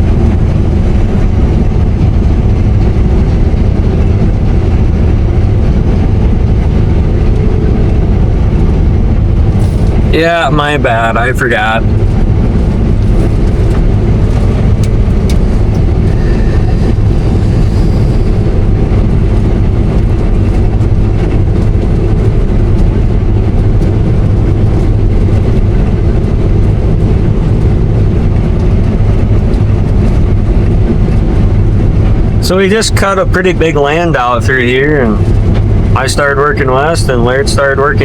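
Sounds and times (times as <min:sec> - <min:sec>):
combine harvester running: 0:00.0 - 0:38.0.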